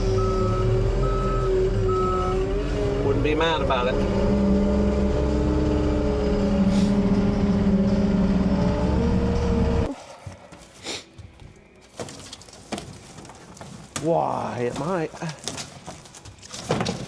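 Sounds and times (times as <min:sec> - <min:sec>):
skid steer engine running: 0:00.0 - 0:09.9.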